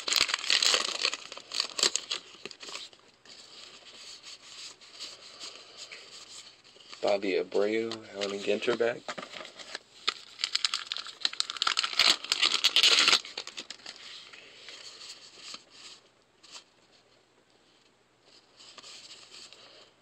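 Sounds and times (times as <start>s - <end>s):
foil wrapper tearing and crinkling: 0.0s - 3.0s, 7.0s - 14.3s
wrapper and cards rustling: 0.0s - 16.7s.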